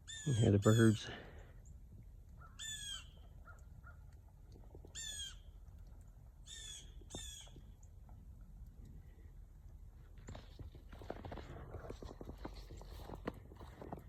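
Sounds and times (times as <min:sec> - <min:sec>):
bird calling: 0:00.0 - 0:01.2, 0:02.4 - 0:04.0, 0:06.4 - 0:07.8.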